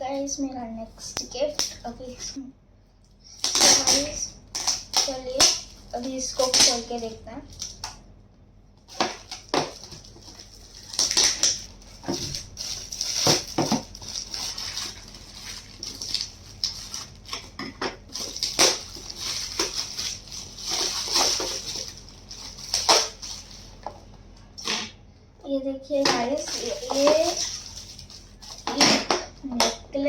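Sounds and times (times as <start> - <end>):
gift wrapping crinkling and tearing: 3.3 - 7.9, 8.9 - 23.8, 26.2 - 28.8.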